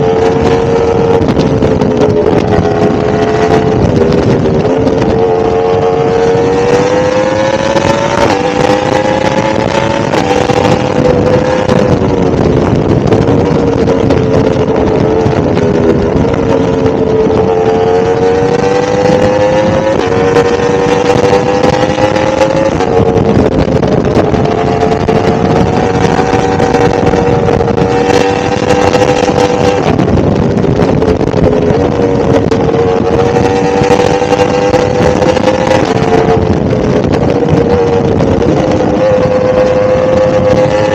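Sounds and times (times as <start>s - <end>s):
motorcycle engine cruising: 0.0s - 40.9s.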